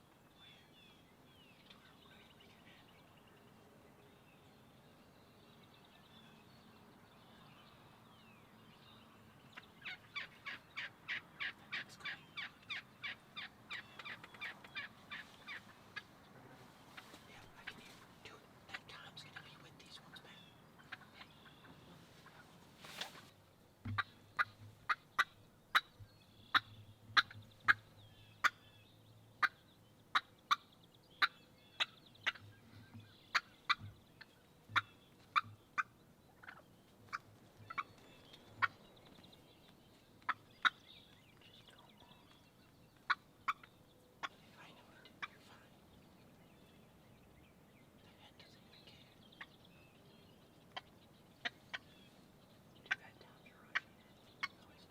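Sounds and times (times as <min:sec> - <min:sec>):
turkeys clucking: 0:23.9 - 0:25.9, 0:26.5 - 0:27.8, 0:31.2 - 0:38.9, 0:43.0 - 0:44.4, 0:53.7 - 0:54.6.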